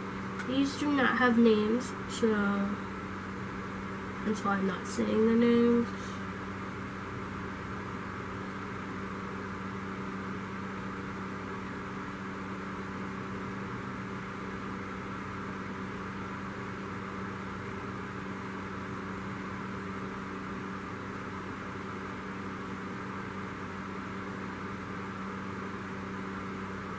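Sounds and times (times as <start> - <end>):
low electrical hum with hiss: 0.0 - 26.9.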